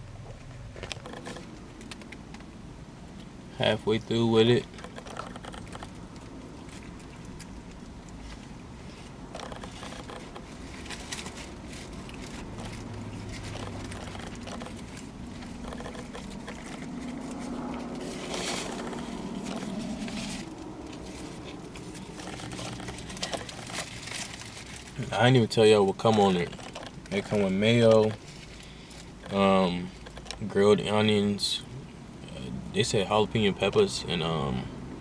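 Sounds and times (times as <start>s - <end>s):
steady low hum: 0.0s - 35.0s
person chewing: 5.1s - 24.5s
wrapper crackling: 6.2s - 25.4s.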